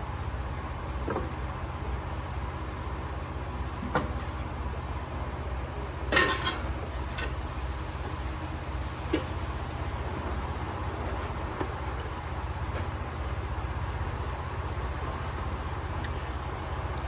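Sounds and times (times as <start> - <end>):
low machine hum: 0.0 - 17.0
cups and bottles clattering: 6.1 - 6.6.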